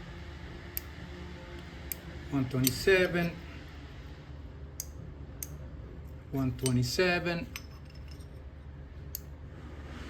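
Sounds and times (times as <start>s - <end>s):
steady low hum: 0.0s - 10.0s
metal tool clicking on steel: 1.9s - 3.1s, 4.8s - 5.6s, 6.4s - 8.4s.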